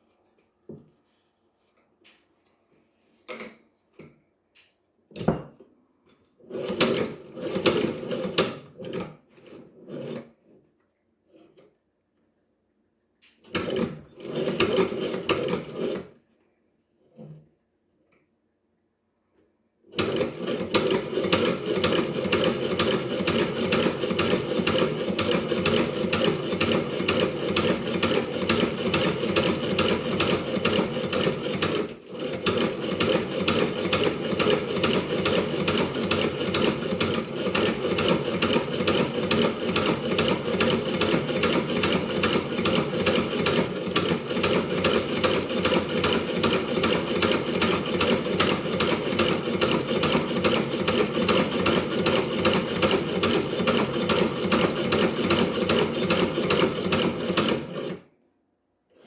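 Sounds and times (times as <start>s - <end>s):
sewing machine stitching: 6.4s - 10.6s, 13.4s - 16.2s, 19.9s - 58.2s.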